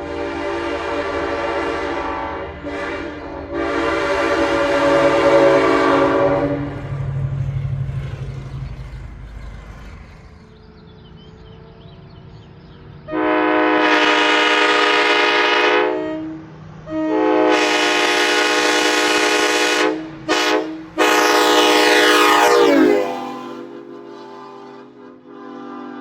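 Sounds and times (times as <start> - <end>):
locomotive air horn blasts: 0.0 - 7.0, 13.1 - 26.0.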